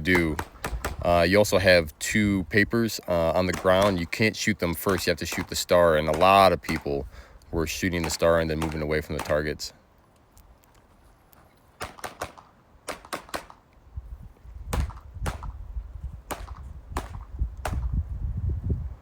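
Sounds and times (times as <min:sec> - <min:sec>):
pistol shots: 0:03.5 - 0:04.2, 0:04.8 - 0:07.0, 0:08.0 - 0:09.6, 0:11.8 - 0:13.6, 0:14.7 - 0:15.6, 0:16.3 - 0:17.9.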